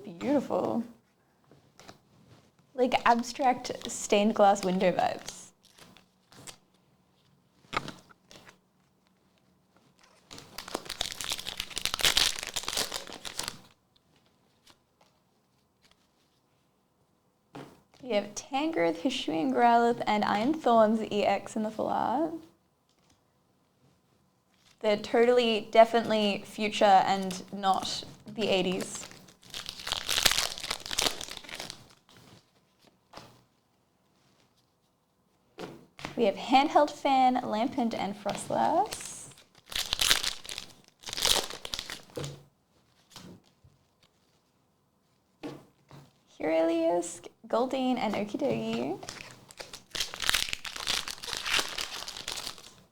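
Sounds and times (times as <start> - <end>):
foil wrapper tearing and crinkling: 10.3 - 13.8, 28.6 - 32.0, 39.3 - 42.2, 49.0 - 52.8.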